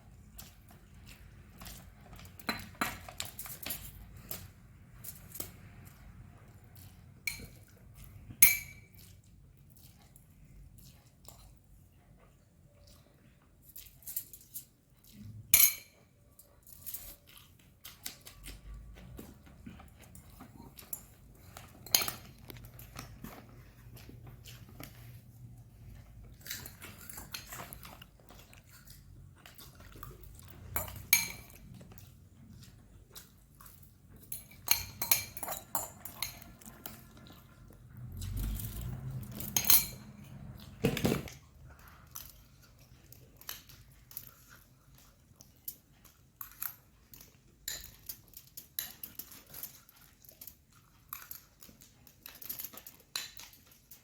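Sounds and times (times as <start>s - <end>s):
crunching and chewing food: 0.0s - 54.0s
utensil clinking against dish: 8.4s - 9.0s, 15.6s - 16.0s, 30.7s - 31.6s, 34.2s - 36.9s, 39.3s - 40.2s.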